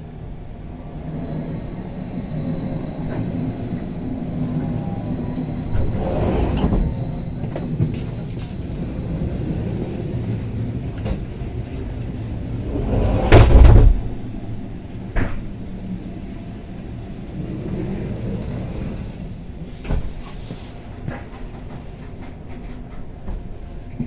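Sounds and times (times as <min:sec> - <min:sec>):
railcar rumbling along track: 0:00.0 - 0:24.0
loud heavy clunk: 0:12.7 - 0:14.2.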